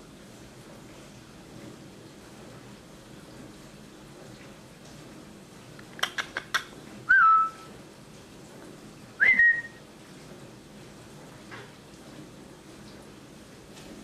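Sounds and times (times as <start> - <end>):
parrot clicking: 5.8 - 6.7
parrot whistling: 7.1 - 7.7, 9.2 - 9.8.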